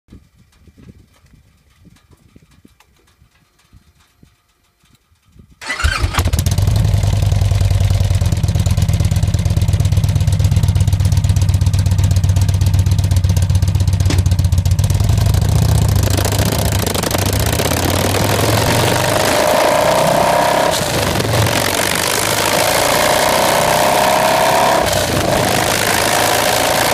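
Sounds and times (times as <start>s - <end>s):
motorcycle engine starting: 5.6s - 26.9s
motorcycle engine idling: 5.7s - 17.9s.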